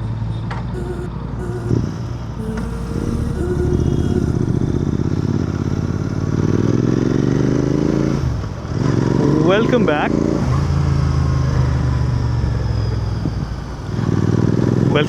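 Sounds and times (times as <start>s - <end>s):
motorcycle engine revving: 0.8s - 15.0s.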